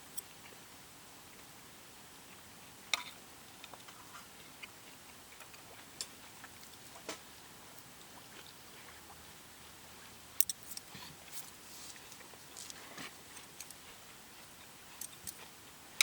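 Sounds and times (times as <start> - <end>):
faint steady hiss: 0.0 - 16.0.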